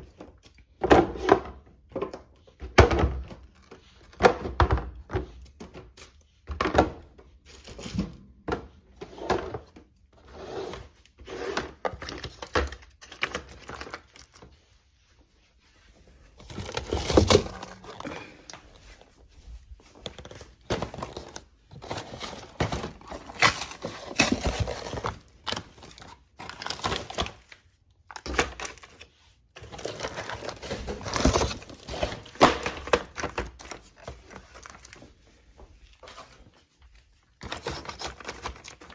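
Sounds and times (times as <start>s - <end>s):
crinkling: 11.7s - 38.9s.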